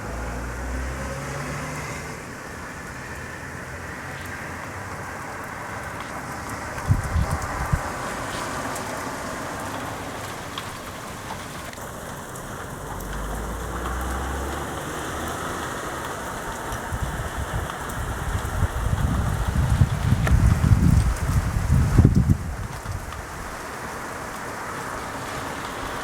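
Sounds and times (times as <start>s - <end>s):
steady rain falling: 0.0s - 26.0s
low thunder rumble: 6.6s - 9.5s, 16.3s - 23.6s.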